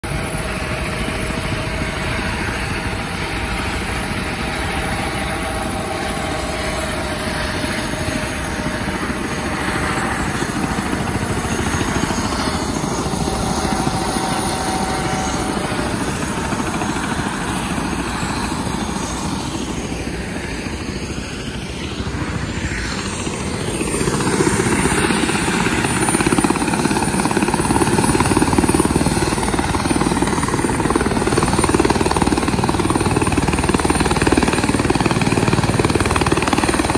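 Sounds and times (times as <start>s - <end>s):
helicopter rotor and engine: 0.0s - 36.9s.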